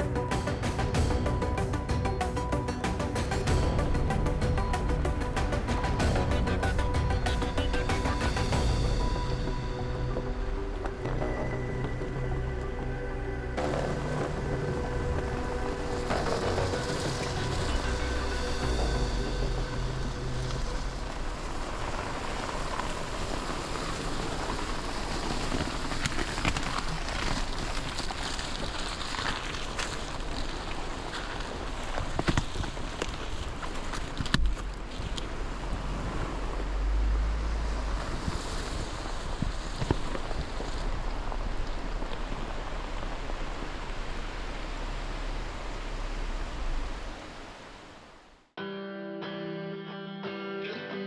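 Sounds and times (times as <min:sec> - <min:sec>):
steady rain falling: 0:00.0 - 0:48.4
wind rumble on microphone: 0:08.3 - 0:47.8.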